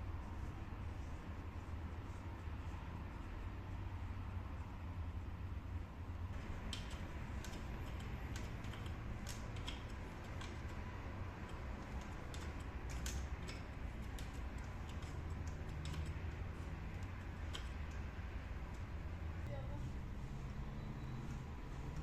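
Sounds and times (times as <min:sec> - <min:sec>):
light clicks and taps: 0:06.4 - 0:19.0.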